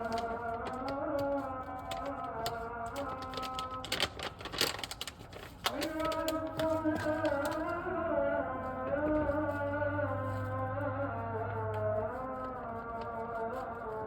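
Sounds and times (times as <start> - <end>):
rapid sharp crackling clicks: 0.0 - 7.8.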